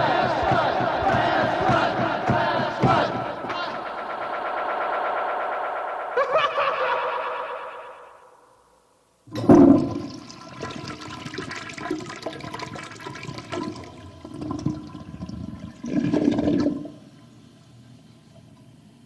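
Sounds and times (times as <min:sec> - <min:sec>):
toilet flushing: 0:09.3 - 0:17.3.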